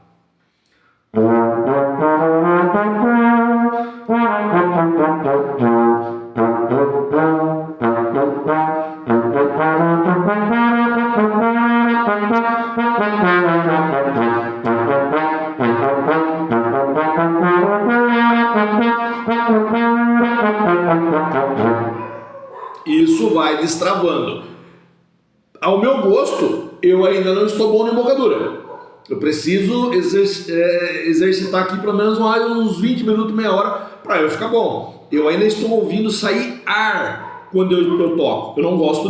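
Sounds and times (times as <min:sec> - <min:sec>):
trombone playing scale runs: 0:01.2 - 0:22.4.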